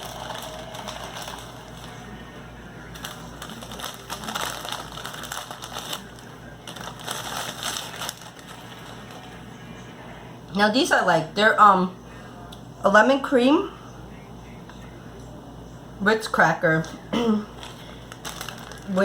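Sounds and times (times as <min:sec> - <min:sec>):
plastic packaging crinkling: 0:00.0 - 0:02.2, 0:02.8 - 0:09.5, 0:17.5 - 0:19.0.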